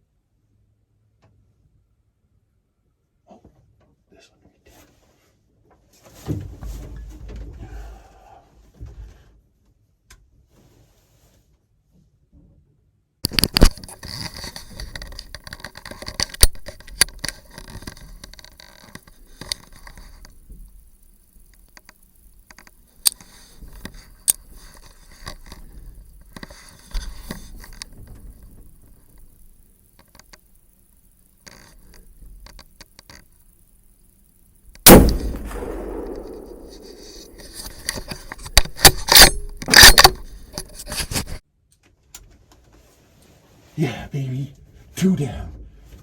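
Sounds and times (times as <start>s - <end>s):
gear clicking and knocking: 34.8s - 41.4s
loud rifle shot: 34.9s - 37.9s.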